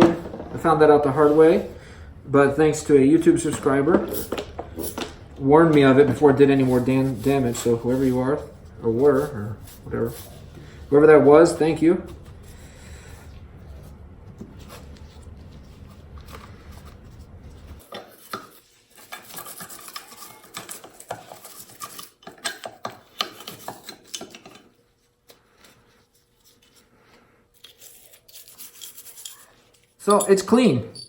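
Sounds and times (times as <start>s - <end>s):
steady low hum: 0.0s - 17.8s.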